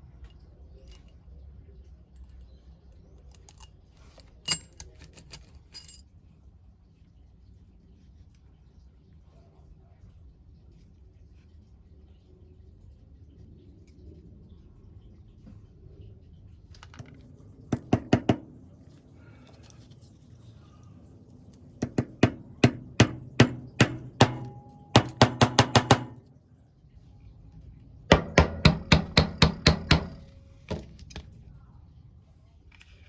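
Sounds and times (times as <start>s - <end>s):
sharp ringing taps: 21.8s - 26.2s.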